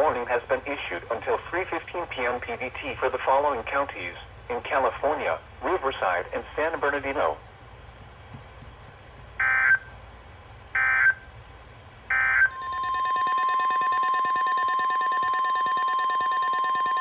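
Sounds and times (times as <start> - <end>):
loud steady attention tone: 12.1 - 17.0
screeching digital data bursts: 12.5 - 17.0.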